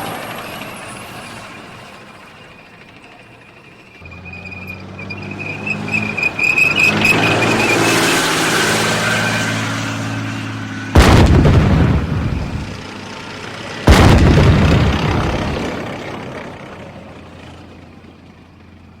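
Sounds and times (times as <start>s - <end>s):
tank engine hum: 0.0s - 19.0s
tank cannon boom: 11.0s - 13.0s, 13.8s - 16.2s.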